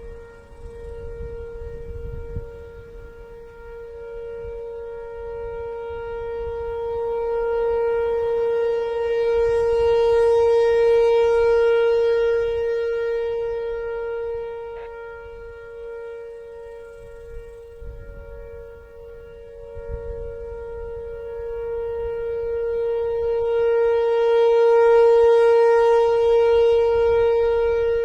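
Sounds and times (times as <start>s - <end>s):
tornado warning siren: 0.0s - 28.0s.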